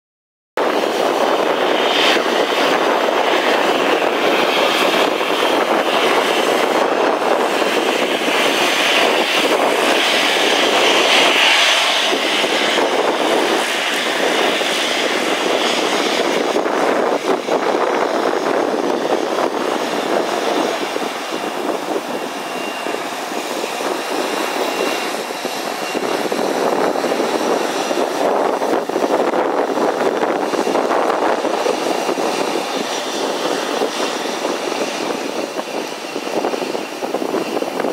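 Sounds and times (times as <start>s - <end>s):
jet engines at takeoff power: 0.6s - 37.9s.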